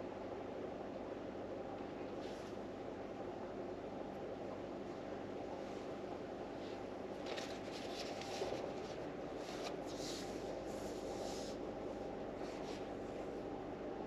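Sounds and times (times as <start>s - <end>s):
book pages rustling: 6.7s - 11.6s.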